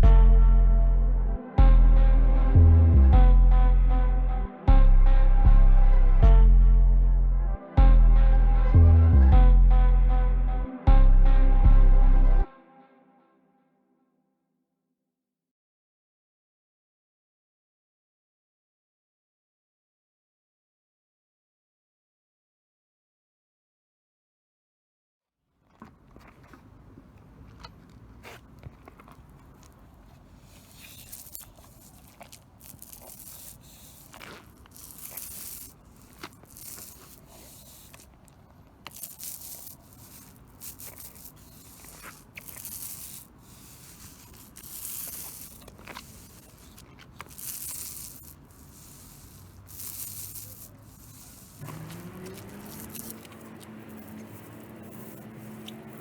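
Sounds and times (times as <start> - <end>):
scraping strokes: 28.2 - 56.0
rising motor tone: 51.6 - 56.0.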